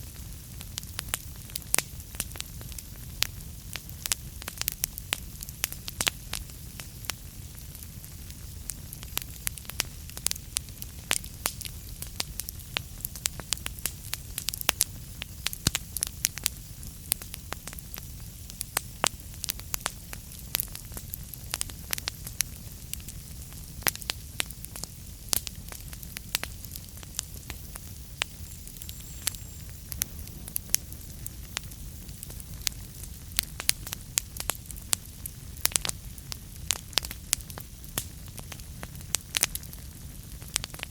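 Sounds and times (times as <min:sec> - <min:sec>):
fire crackles and pops: 0:00.0 - 0:40.9
low rumble of flames: 0:00.0 - 0:40.9.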